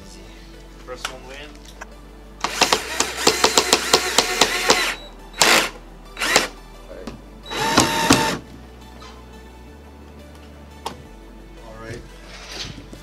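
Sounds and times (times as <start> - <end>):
cordless drill driving screws: 2.4 - 6.6, 7.5 - 8.4.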